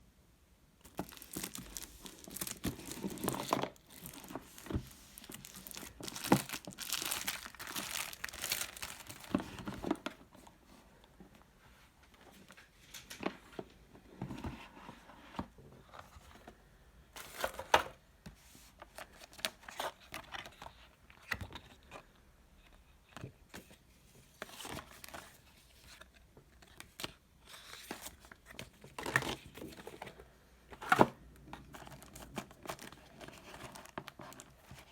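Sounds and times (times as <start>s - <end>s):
packaging crinkling and tearing: 0.8s - 10.0s, 31.8s - 34.9s.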